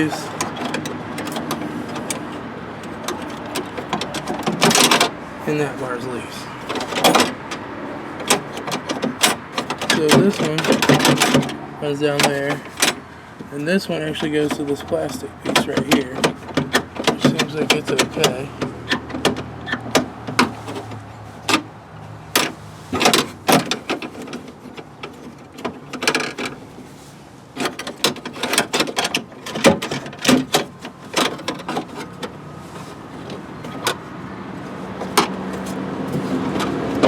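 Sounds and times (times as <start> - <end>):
clicks and knocks of tools: 0.0 - 5.1, 8.2 - 11.6, 27.6 - 34.0.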